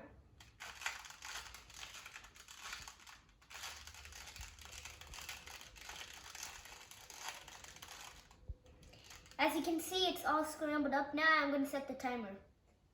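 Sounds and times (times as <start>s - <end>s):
puzzle cube plastic clicks: 0.4s - 9.4s.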